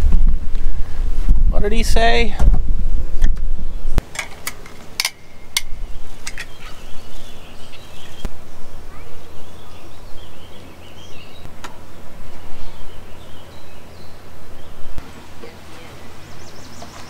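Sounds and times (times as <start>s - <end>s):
steady low rumble: 0.0s - 4.0s
birds chirping: 3.4s - 17.0s.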